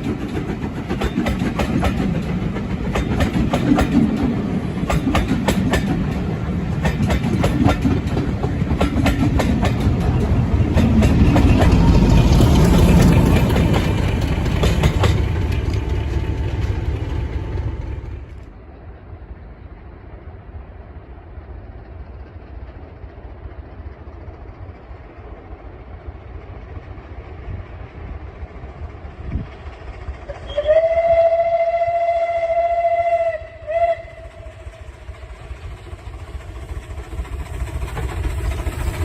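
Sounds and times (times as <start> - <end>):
wheels clicking over rail joints: 0.0 - 18.6
train rumbling past: 0.0 - 39.0
steam locomotive whistle: 30.3 - 34.8.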